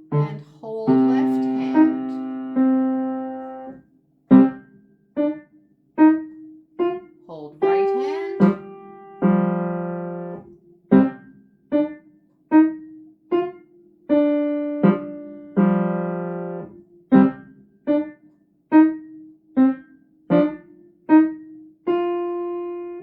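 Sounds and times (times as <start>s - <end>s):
slow piano melody: 0.0s - 23.0s.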